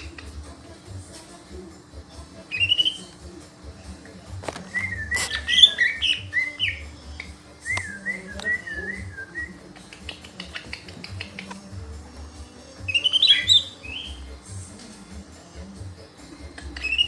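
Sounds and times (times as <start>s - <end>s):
bird singing whistled phrases: 2.5s - 3.1s, 4.7s - 6.8s, 7.6s - 9.6s, 12.9s - 14.2s, 16.8s - 17.0s.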